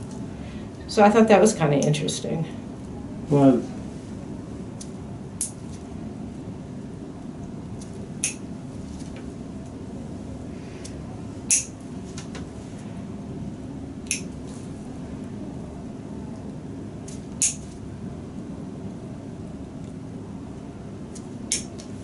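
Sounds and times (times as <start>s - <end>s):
steady low hum: 0.0s - 22.0s
toenail nippers snipping: 17.4s - 17.7s.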